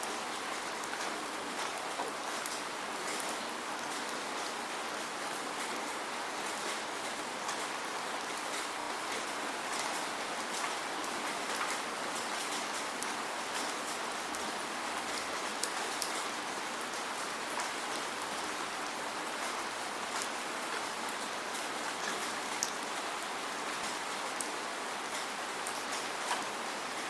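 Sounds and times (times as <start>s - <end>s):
steady rain hiss: 0.0s - 27.0s
rain drop ticks: 21.1s - 26.5s.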